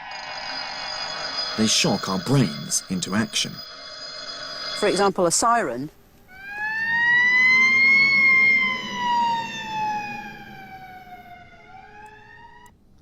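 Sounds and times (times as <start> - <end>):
siren wailing: 6.3 - 12.8.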